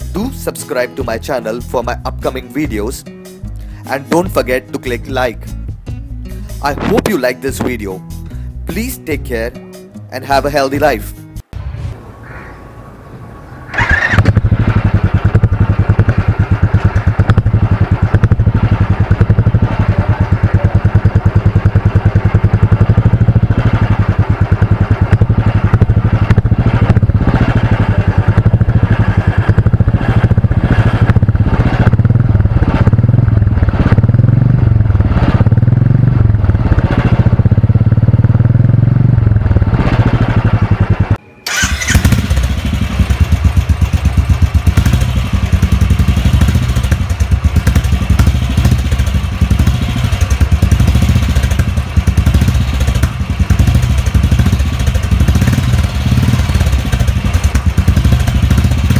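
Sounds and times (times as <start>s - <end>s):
motorcycle engine idling: 13.3s - 58.9s.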